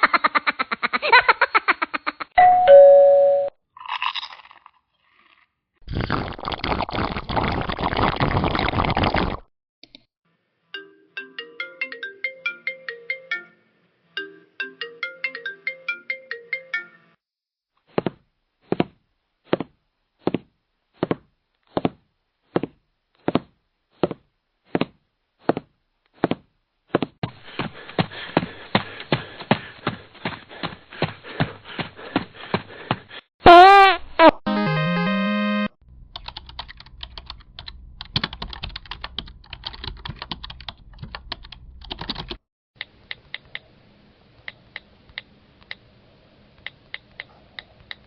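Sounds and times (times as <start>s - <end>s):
tinkling ringtone tune: 2.4s - 3.5s.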